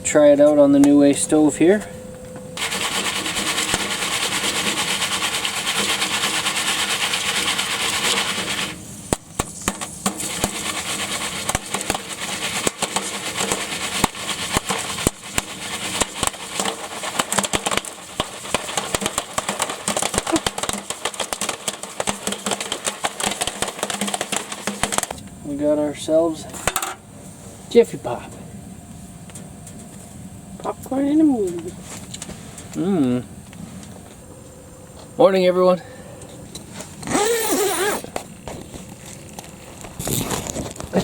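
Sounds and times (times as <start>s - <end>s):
popcorn popping: 2.1s - 25.4s
popcorn hissing on a stove: 2.6s - 34.0s, 37.2s - 41.0s.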